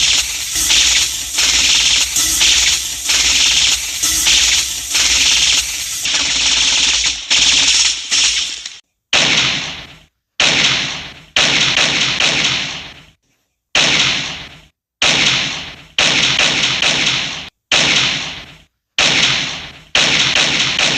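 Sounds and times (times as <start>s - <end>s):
gunshots with hissing tails: 0.0s - 8.3s.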